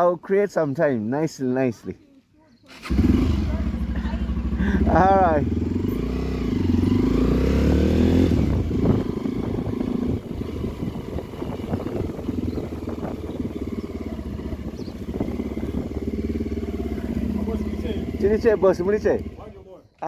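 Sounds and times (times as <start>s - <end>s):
motorcycle engine revving: 2.7s - 19.7s.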